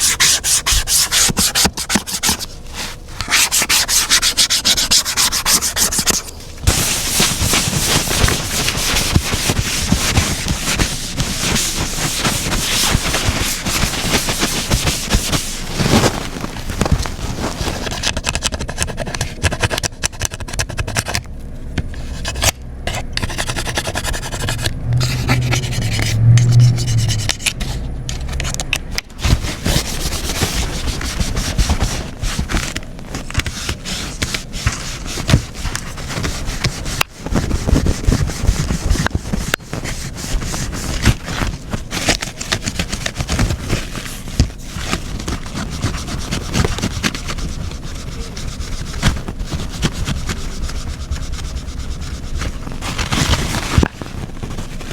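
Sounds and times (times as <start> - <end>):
scrubbing and scraping on casing: 0.0 - 54.9
brief low hum: 22.1 - 28.8.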